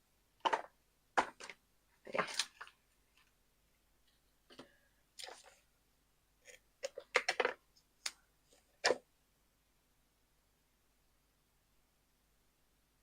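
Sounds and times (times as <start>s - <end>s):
rustle of craft supplies: 0.4s - 3.4s, 4.0s - 5.8s.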